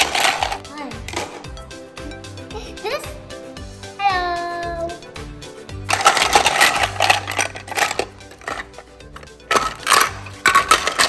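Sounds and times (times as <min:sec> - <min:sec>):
plastic toy pieces clattering: 0:00.0 - 0:01.5, 0:05.9 - 0:11.0
background music: 0:00.0 - 0:11.0.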